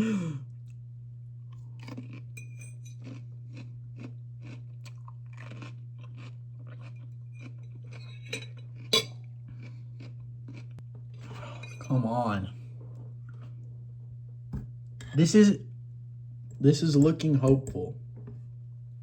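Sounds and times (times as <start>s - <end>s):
steady low hum: 0.0s - 19.0s
crisp crunches of chewing pickles: 1.5s - 8.9s, 9.5s - 10.8s.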